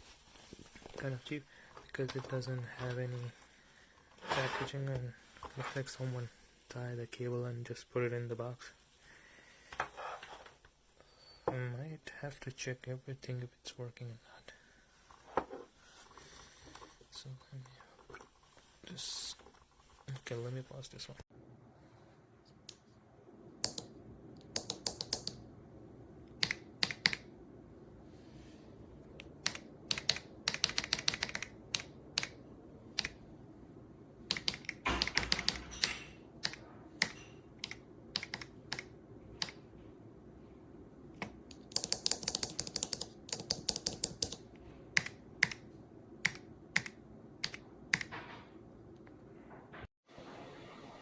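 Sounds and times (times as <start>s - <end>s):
computer keyboard typing: 23.6s - 25.4s, 26.4s - 27.3s, 29.2s - 32.4s, 34.3s - 39.6s, 41.2s - 45.6s.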